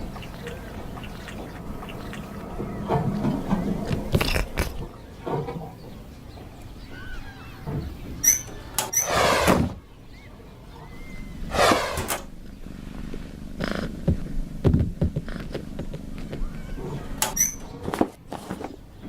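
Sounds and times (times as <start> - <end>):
cat calling: 0.0 - 9.5.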